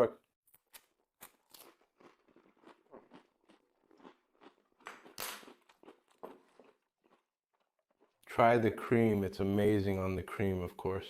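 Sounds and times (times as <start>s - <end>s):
person chewing softly: 1.2s - 8.3s.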